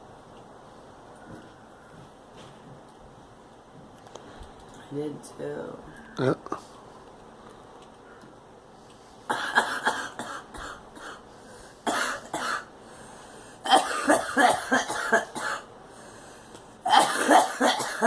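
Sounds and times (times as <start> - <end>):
girl coughing: 9.3 - 11.2, 11.9 - 12.7, 13.6 - 15.7, 16.9 - 18.0.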